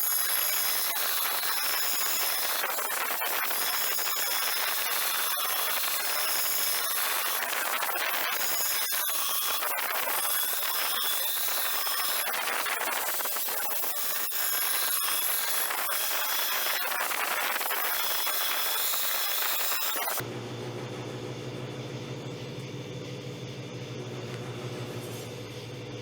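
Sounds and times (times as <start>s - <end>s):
power grinder grinding steel: 0.0s - 20.3s
low motor hum: 20.2s - 26.0s.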